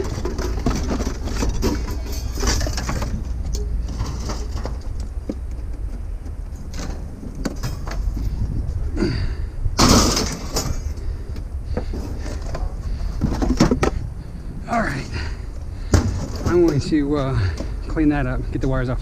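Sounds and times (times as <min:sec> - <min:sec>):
scrap metal clanking: 0:00.0 - 0:08.6, 0:09.8 - 0:11.0, 0:14.9 - 0:18.0
low rumble: 0:00.0 - 0:18.6
loud metal crash: 0:09.8 - 0:10.9.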